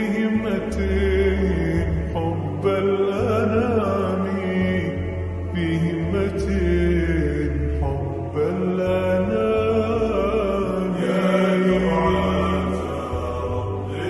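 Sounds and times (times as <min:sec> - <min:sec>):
chant-like held notes: 0:00.0 - 0:14.0
deep bass: 0:00.0 - 0:14.0.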